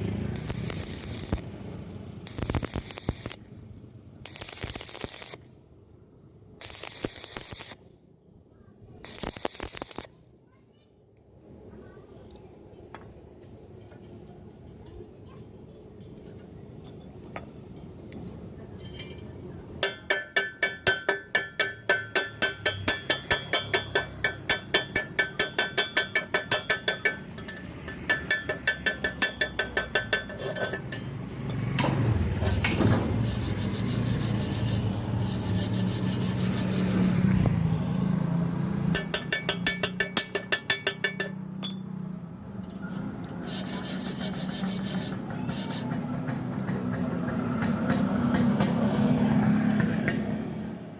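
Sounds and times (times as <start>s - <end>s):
metal scraping strokes: 0.0s - 1.6s, 2.3s - 3.5s, 4.3s - 5.5s, 6.6s - 7.8s, 19.8s - 37.7s, 38.9s - 41.8s, 42.6s - 46.1s.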